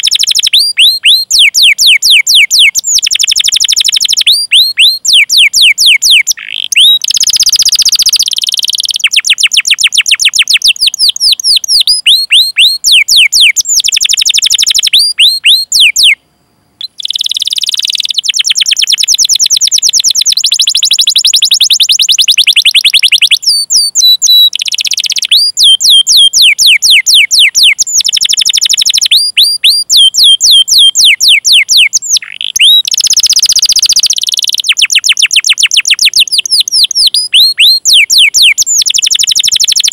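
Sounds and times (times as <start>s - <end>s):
canary singing rolling trills: 0.0s - 16.2s, 16.8s - 39.9s.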